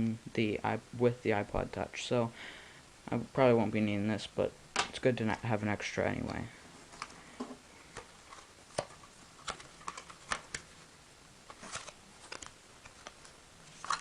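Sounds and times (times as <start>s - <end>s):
packaging rustling: 7.9s - 10.8s, 11.4s - 14.0s.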